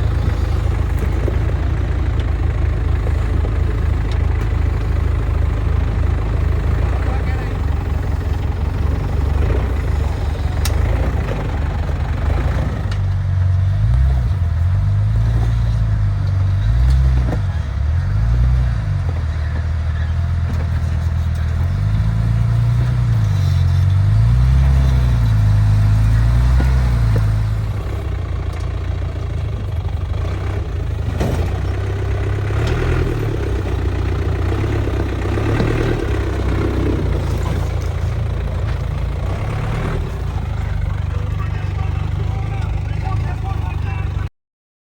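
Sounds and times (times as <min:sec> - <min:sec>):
off-road vehicle engine revving: 0:00.0 - 0:44.3.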